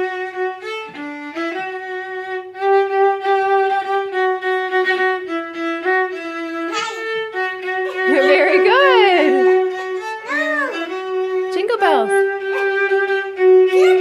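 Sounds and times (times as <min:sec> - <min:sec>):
viola bowed in long notes: 0:00.0 - 0:14.0.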